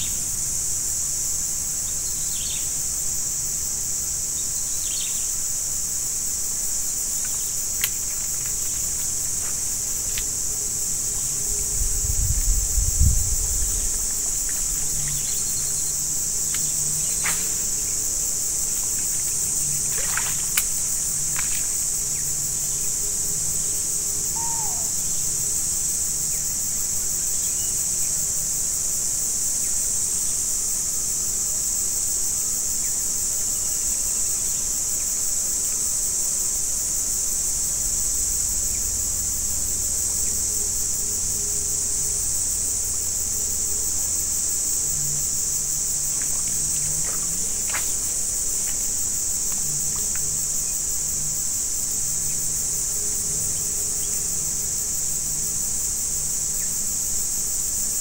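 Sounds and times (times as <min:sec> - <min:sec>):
insects chirping chorus: 0:00.0 - 0:58.0
short falling call: 0:24.3 - 0:24.9.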